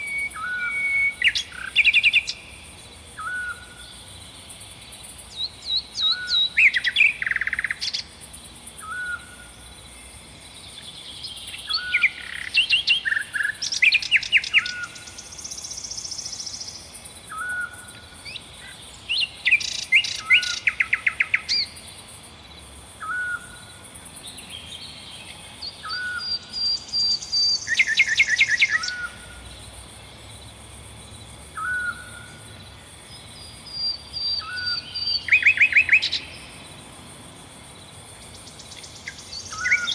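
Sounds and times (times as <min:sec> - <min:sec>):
birds rattling trills: 0:38.2 - 0:39.9.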